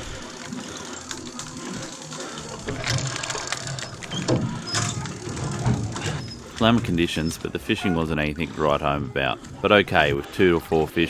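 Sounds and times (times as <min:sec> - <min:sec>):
mechanical clicking and rattling: 0:00.0 - 0:07.6.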